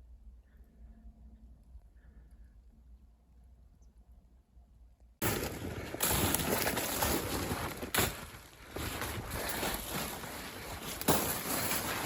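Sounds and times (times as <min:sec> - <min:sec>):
footsteps on snowy ground: 0:05.2 - 0:12.0.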